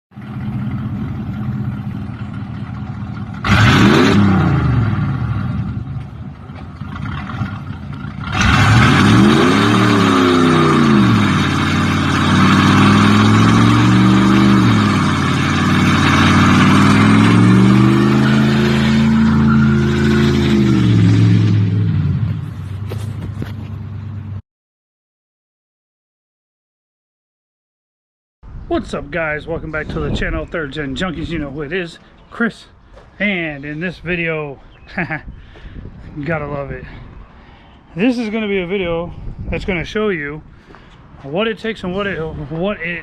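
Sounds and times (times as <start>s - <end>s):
car engine idling and revving: 0.1s - 24.4s.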